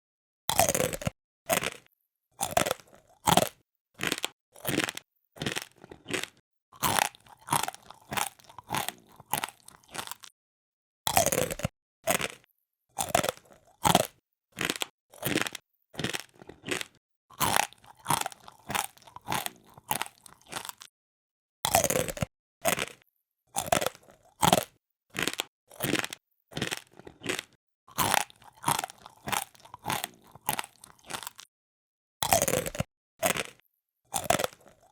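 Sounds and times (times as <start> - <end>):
person chewing crunchy food: 0.5 - 10.3, 11.1 - 20.9, 21.7 - 31.5, 32.2 - 34.9.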